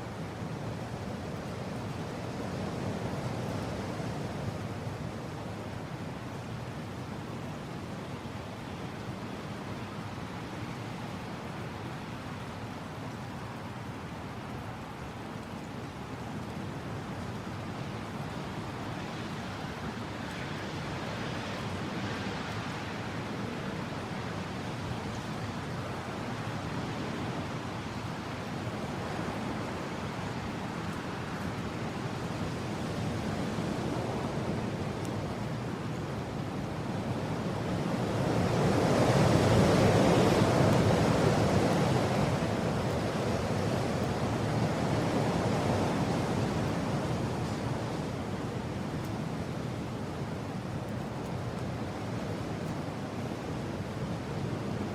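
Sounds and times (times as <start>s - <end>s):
strong wind blowing: 18.6s - 54.9s.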